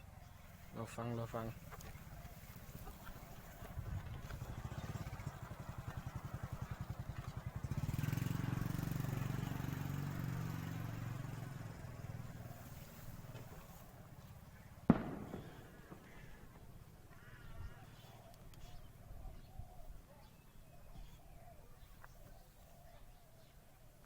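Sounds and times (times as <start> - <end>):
dove cooing: 1.5 - 7.4, 17.2 - 23.7.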